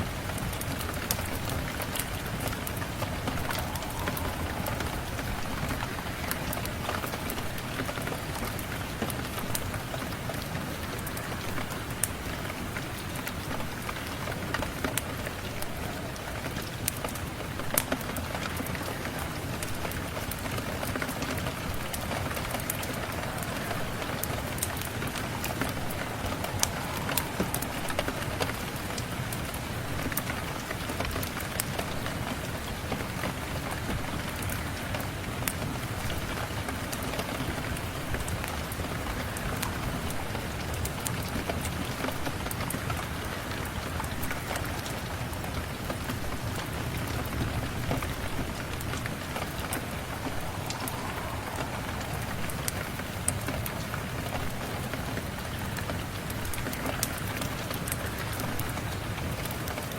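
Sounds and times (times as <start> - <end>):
steady rain: 0.0 - 59.9
wood fire crackling: 0.0 - 59.9.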